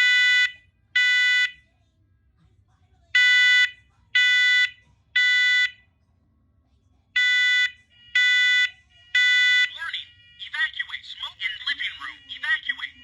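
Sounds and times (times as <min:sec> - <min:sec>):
smoke alarm beeps: 0:00.0 - 0:01.6, 0:03.2 - 0:05.8, 0:07.2 - 0:10.6.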